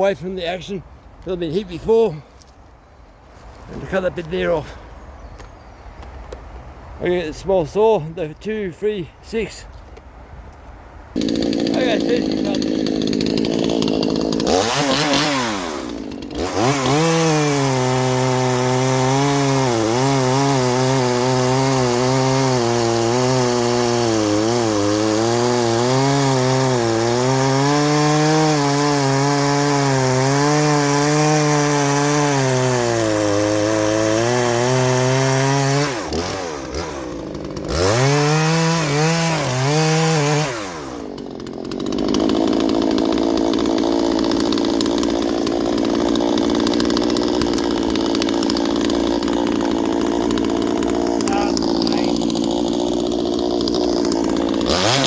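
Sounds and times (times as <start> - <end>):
chainsaw cutting log: 11.1 - 55.0.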